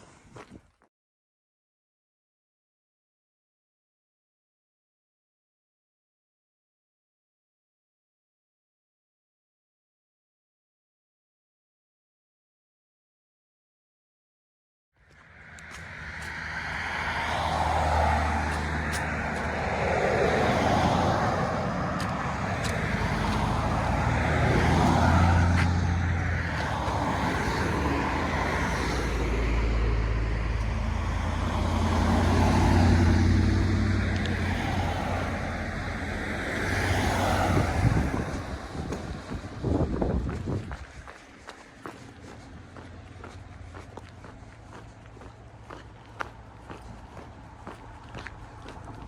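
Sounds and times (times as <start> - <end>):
car engine and tyre drone: 15.0 - 49.0.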